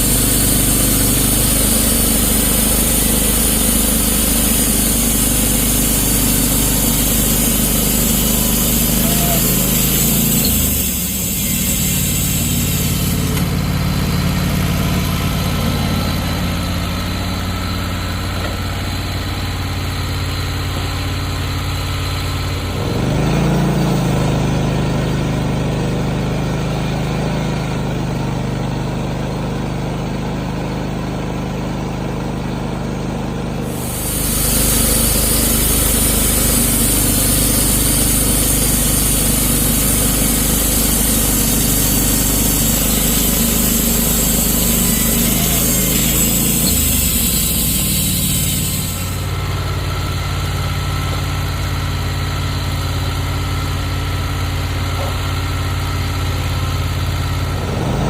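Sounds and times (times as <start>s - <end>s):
sawmill engine running: 0.0s - 58.0s.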